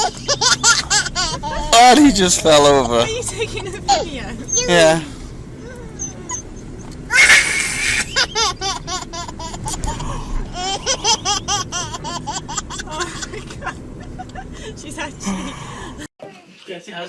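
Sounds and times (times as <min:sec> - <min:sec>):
small child laughing: 0:00.0 - 0:01.8, 0:07.1 - 0:14.6.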